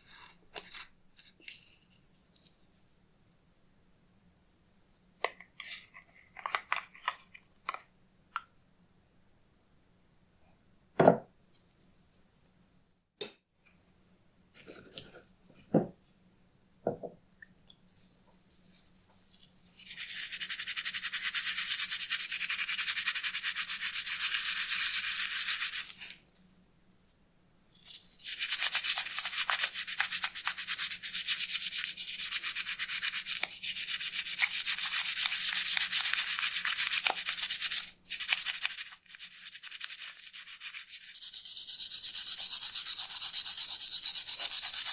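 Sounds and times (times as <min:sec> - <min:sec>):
hand scrubbing a surface: 0:18.5 - 0:26.1, 0:27.8 - 0:44.9.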